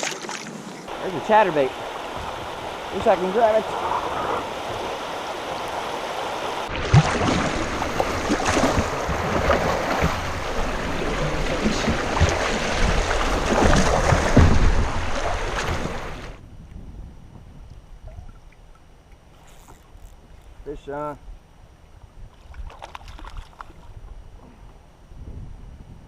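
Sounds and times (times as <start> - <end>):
water splashing around kayak: 0.0 - 16.4
low knocks: 11.3 - 16.1.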